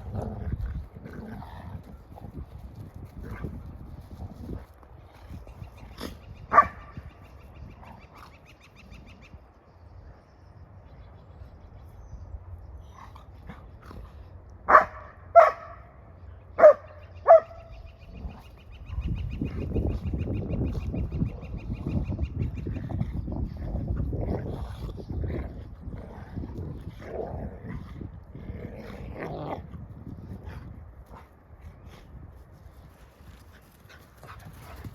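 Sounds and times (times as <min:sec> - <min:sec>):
dogs play-barking: 0:13.0 - 0:15.9, 0:16.6 - 0:19.6.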